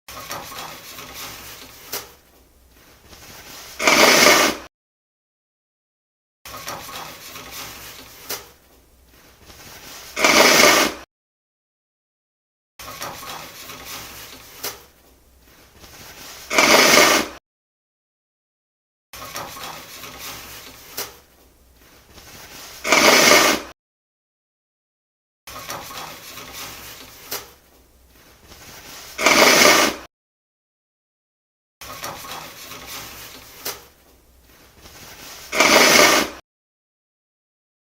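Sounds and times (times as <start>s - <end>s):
toilet paper tearing off roll: 0.2s - 2.2s, 2.9s - 4.7s, 6.5s - 8.6s, 9.4s - 11.1s, 12.9s - 15.0s, 15.6s - 17.4s, 19.2s - 21.3s, 22.2s - 23.8s, 25.5s - 30.1s, 31.8s - 36.4s
nose blowing: 3.7s - 4.7s, 10.1s - 11.0s, 16.4s - 17.4s, 22.7s - 23.7s, 29.0s - 30.1s, 35.4s - 36.4s.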